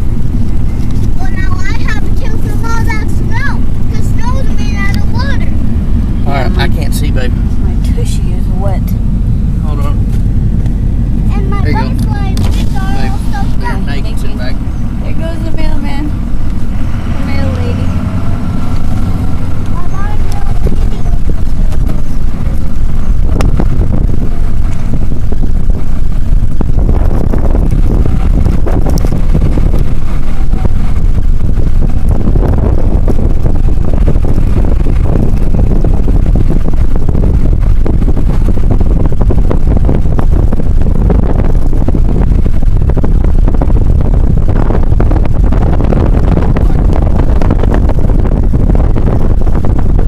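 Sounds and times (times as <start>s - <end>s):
car interior road rumble: 0.0s - 50.0s.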